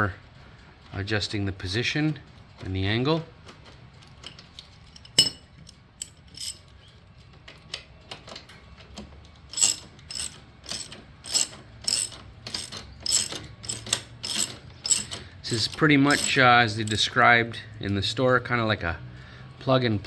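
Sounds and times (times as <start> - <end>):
ratchet wrench clicking: 9.5 - 17.1.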